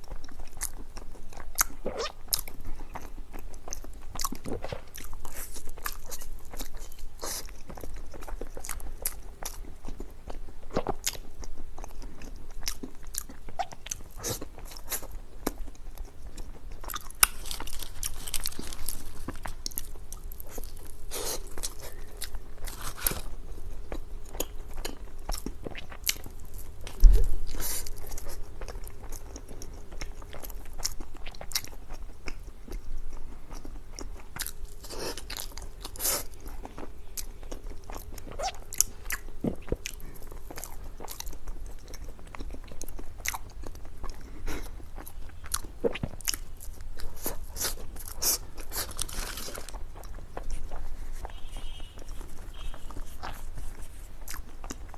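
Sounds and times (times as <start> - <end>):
person biting and chewing pastries: 0.0 - 54.9
low thump: 27.0 - 27.4.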